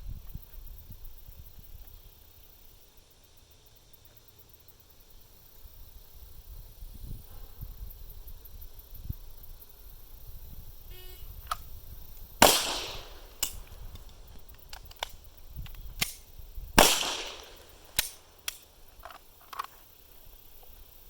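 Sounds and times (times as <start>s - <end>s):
pistol shots: 12.4s - 15.3s, 16.0s - 18.8s.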